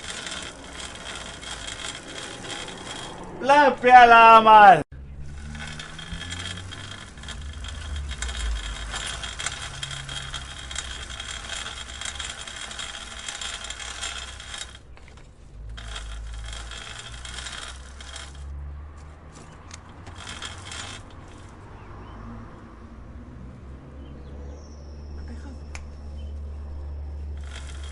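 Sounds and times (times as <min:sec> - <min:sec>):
bicycle chain clicking: 0:00.0 - 0:03.8, 0:05.0 - 0:21.9, 0:27.2 - 0:27.9.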